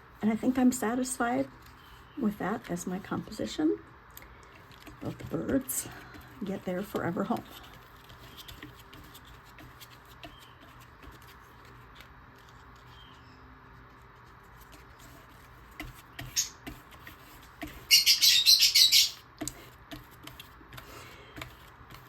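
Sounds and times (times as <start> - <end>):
harsh rapid bird chirps: 16.2 - 16.6, 17.8 - 19.3
lovebird calling: 17.8 - 19.3
hand ticks on paper: 19.3 - 22.0.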